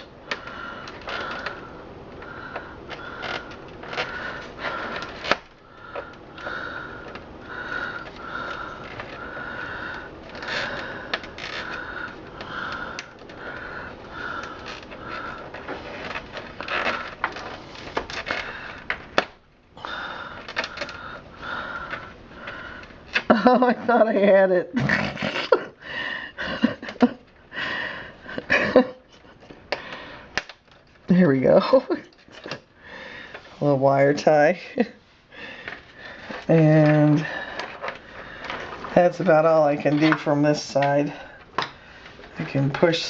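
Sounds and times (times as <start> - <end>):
plastic and cables clicking: 0.0 - 23.6, 28.4 - 31.1, 31.7 - 33.5, 35.5 - 43.0.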